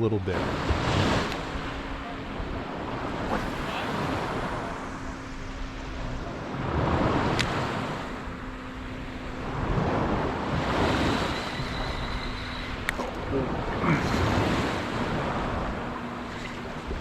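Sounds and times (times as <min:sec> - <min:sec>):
surf washing up on beach: 0:00.0 - 0:05.0, 0:09.4 - 0:12.2, 0:13.0 - 0:17.0
wind on microphone: 0:00.0 - 0:17.0.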